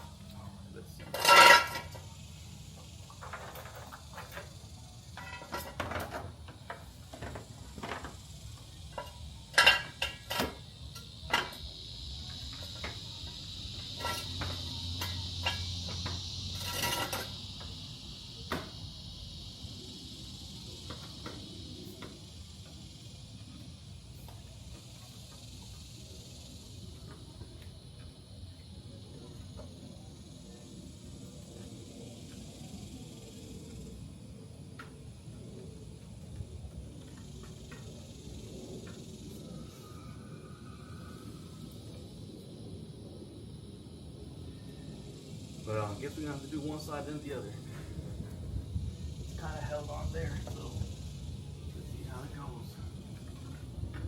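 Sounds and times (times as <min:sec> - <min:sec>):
steady high hiss: 0:00.0 - 0:54.0
metal clanks of car jack: 0:01.0 - 0:02.0, 0:05.2 - 0:06.3, 0:08.9 - 0:10.6, 0:16.6 - 0:17.3.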